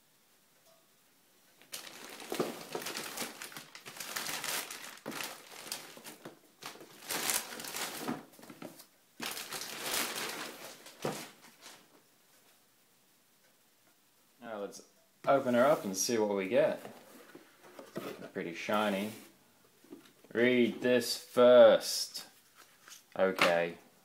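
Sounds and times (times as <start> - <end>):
packaging crinkling: 1.6 - 11.8.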